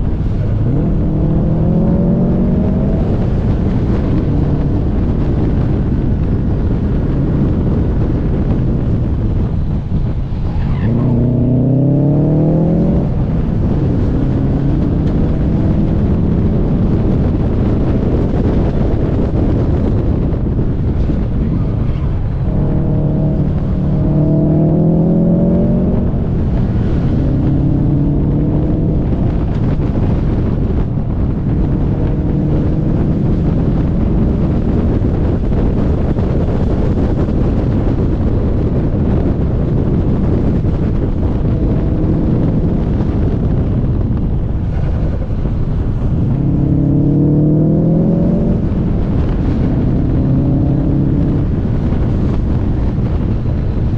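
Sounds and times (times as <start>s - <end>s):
car engine accelerating: 0.0s - 53.9s
wind rush on microphone: 0.0s - 53.9s.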